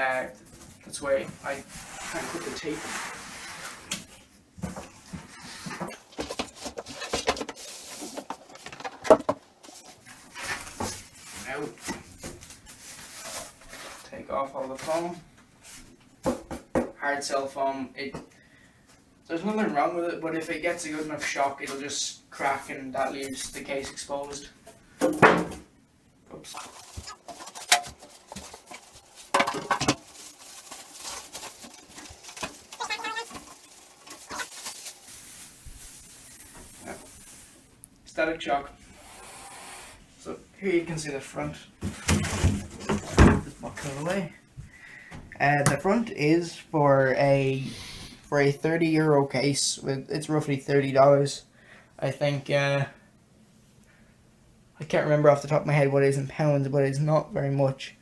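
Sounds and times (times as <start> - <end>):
foam packing squeaking: 26.5 - 29.4, 30.0 - 37.6.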